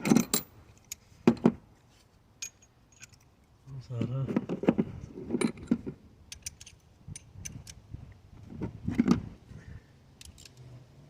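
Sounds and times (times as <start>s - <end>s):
hand tools clinking: 2.4s - 3.3s.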